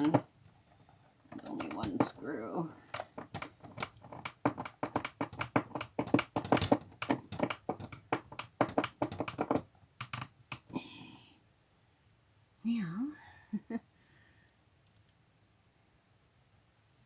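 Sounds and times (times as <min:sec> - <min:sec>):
small clicks and taps of hardware: 0:00.0 - 0:00.3, 0:01.3 - 0:02.2, 0:02.9 - 0:10.7.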